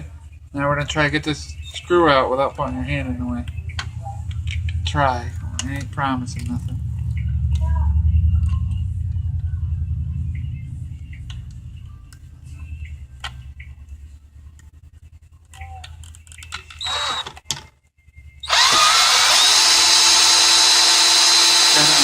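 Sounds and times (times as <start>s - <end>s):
power drill whining: 16.8s - 17.3s, 18.4s - 22.0s.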